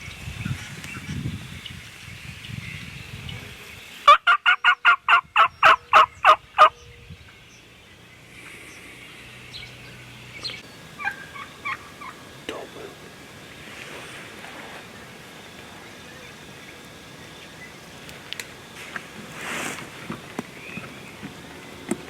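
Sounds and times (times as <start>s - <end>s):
turkey yelping: 4.1s - 6.8s, 11.0s - 12.2s.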